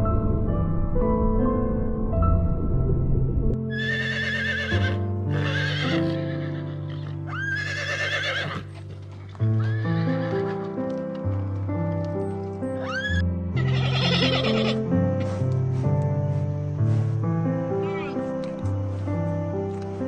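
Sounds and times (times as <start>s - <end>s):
background music: 0.0s - 20.0s
horse whinnying: 3.7s - 8.9s, 9.5s - 10.7s, 12.8s - 14.8s, 17.8s - 18.2s.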